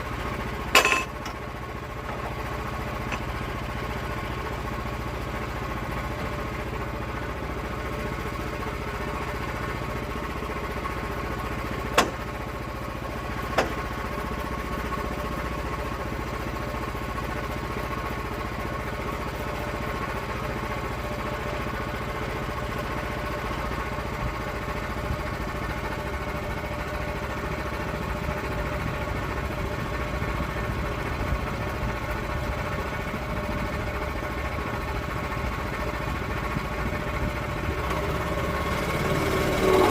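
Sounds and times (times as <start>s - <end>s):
small engine running: 0.0s - 39.9s
sharp knocks: 12.0s - 12.2s.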